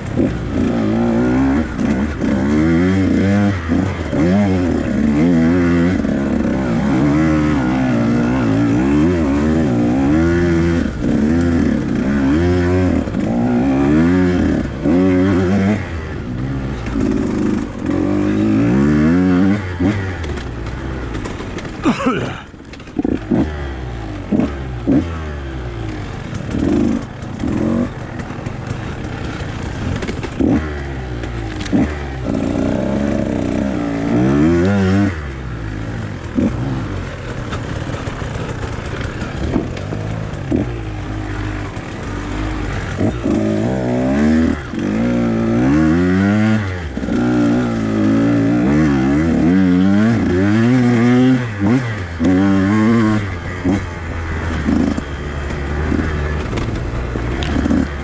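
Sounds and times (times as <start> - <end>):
dirt bike engine revving: 0.0 - 58.0
sharp knocks and clatter: 16.7 - 23.6, 25.9 - 35.2, 36.0 - 58.0.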